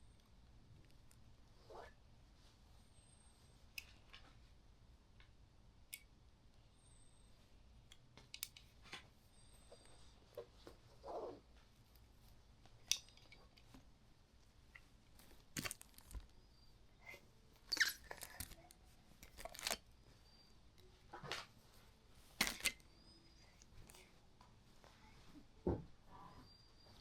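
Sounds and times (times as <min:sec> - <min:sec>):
quiet clicks and rustles: 0:07.9 - 0:16.5.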